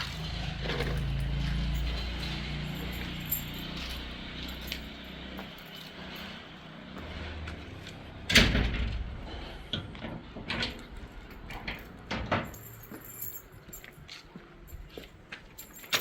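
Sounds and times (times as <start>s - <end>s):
door slamming: 8.3s - 9.1s.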